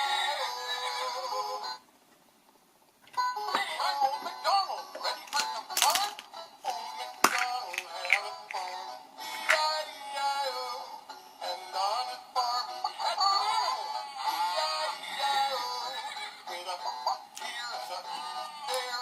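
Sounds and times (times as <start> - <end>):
synthetic singing nursery song: 0.0 - 1.8, 3.2 - 19.0
thin tinny backing music: 3.0 - 19.0.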